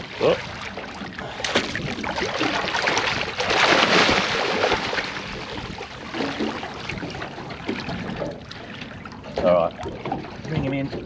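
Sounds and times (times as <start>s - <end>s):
rushing water splash: 0.0s - 8.2s
water noise around boat: 0.0s - 11.0s
wind: 0.0s - 11.0s.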